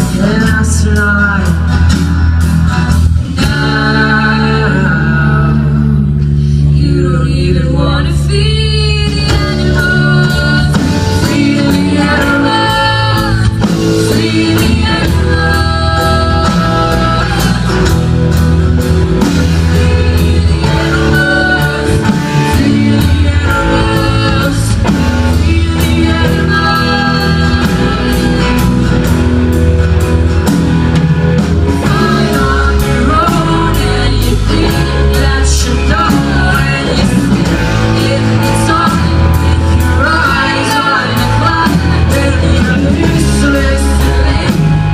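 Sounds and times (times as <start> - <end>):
electric guitar: 0.0 - 44.9
rock band playing loud: 0.0 - 44.9
steady drum beat: 9.1 - 44.9.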